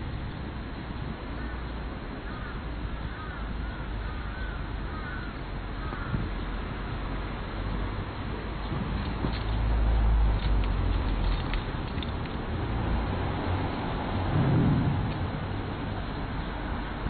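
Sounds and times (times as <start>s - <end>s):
outdoor background hiss: 0.0s - 17.0s
crow cawing: 2.2s - 6.2s.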